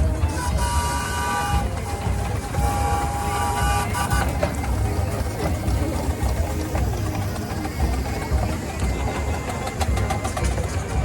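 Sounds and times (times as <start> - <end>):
low rumble of engines: 0.0 - 11.0
steam whistle blowing: 0.3 - 4.5.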